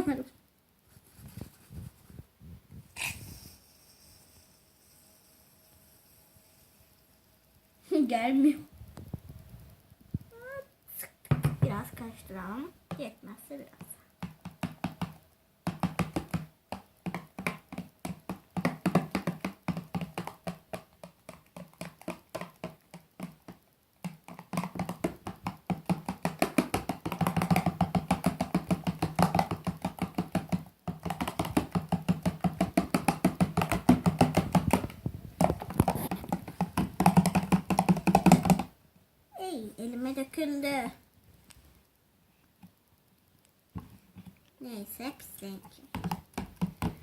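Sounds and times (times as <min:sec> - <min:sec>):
slime stirred in a bowl: 0:16.1 - 0:38.7.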